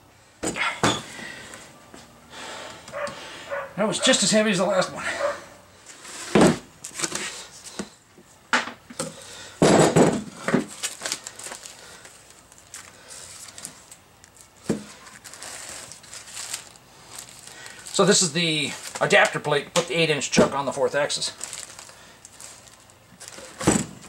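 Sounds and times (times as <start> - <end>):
packing material rustling and scraping: 5.2 - 8.0, 10.2 - 24.0
heavy parts knocking and thumping: 9.6 - 10.7.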